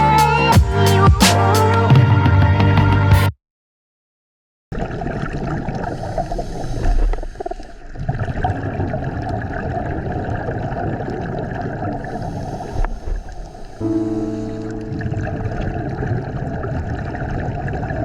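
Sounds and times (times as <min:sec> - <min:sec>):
low water surge: 0:04.8 - 0:18.0
underwater water noise: 0:04.8 - 0:18.0.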